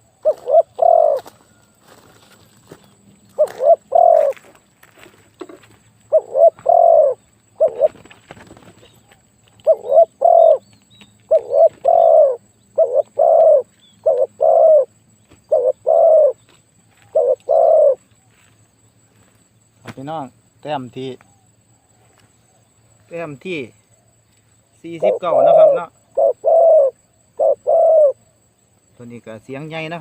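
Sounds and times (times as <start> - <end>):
dove cooing: 0.0 - 1.6, 3.3 - 4.6, 6.1 - 18.1, 24.0 - 28.5.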